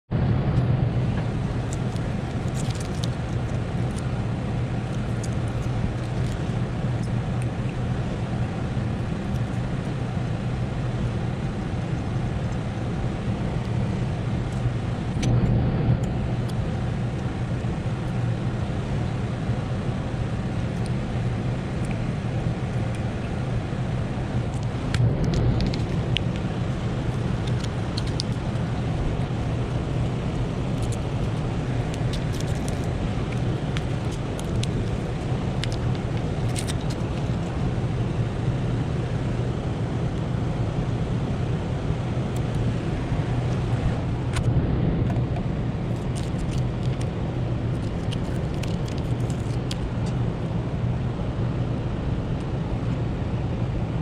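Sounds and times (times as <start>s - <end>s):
low mechanical hum: 0.0s - 54.0s.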